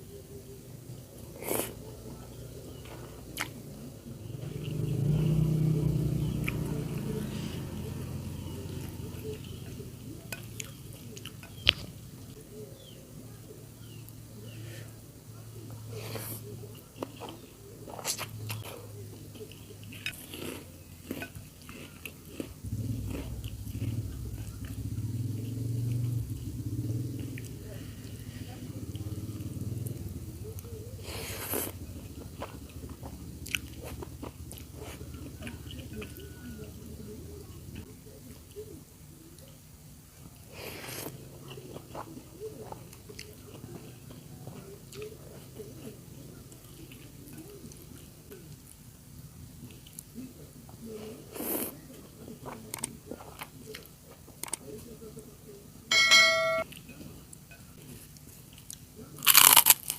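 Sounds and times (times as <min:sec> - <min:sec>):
person chewing food: 0:02.8 - 0:03.6, 0:06.2 - 0:11.9, 0:16.0 - 0:26.1, 0:31.0 - 0:36.8, 0:40.5 - 0:48.1, 0:57.8 - 0:59.9
biting and chewing: 0:16.1 - 0:26.1, 0:58.1 - 0:59.9
low steady hum: 0:20.9 - 0:31.1, 0:55.9 - 0:58.4.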